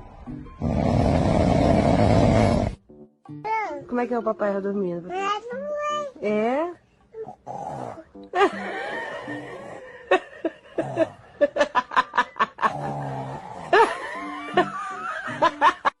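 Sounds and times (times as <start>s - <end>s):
baby imitating snoring: 0.6s - 2.8s, 7.1s - 8.2s
woman laughing: 8.4s - 12.7s, 13.8s - 16.0s.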